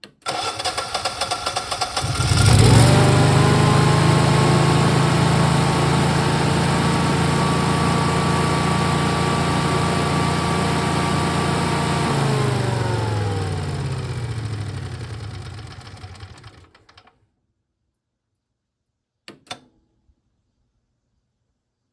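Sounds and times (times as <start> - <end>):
engine starter cranking: 0.1 - 4.4, 12.0 - 17.1
steady loud whir: 1.9 - 16.6.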